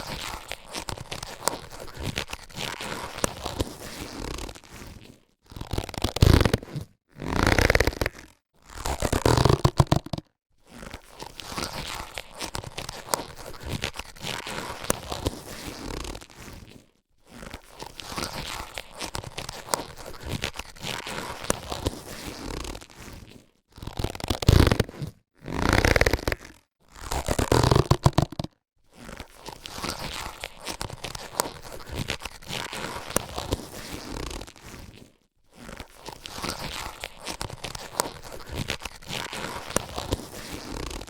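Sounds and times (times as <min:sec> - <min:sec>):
latex gloves rubbing: 0:00.0 - 0:41.0.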